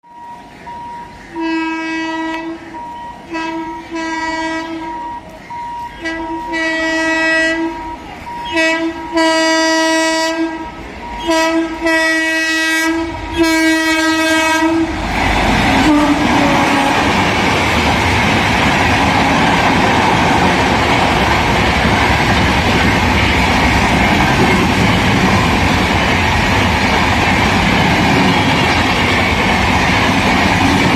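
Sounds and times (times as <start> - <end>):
train rumbling and clattering past: 0.1 - 30.9
locomotive horn blasts: 1.4 - 5.0, 5.8 - 14.9, 15.8 - 17.2.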